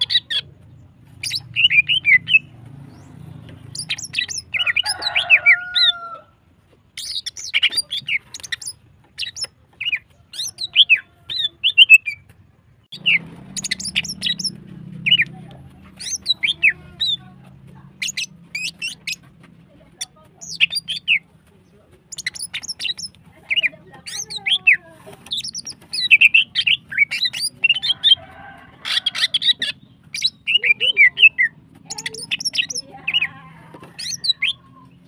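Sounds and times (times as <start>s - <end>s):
bird chirping and whistling: 1.2s - 3.1s, 3.7s - 5.0s, 7.0s - 12.2s, 12.9s - 15.2s, 16.0s - 17.2s, 18.0s - 19.2s, 20.4s - 21.2s, 22.1s - 28.2s, 28.9s - 33.3s, 34.0s - 34.7s.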